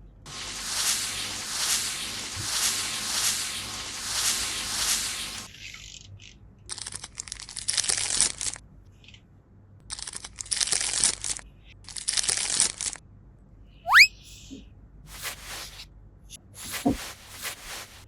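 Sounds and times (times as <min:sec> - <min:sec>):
rising whistle: 0:13.9 - 0:14.1.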